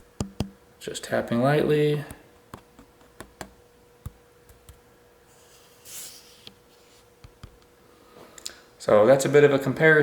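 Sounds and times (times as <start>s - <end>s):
faint steady hum: 0.0s - 10.0s
fingertip taps on camera body: 0.2s - 0.6s.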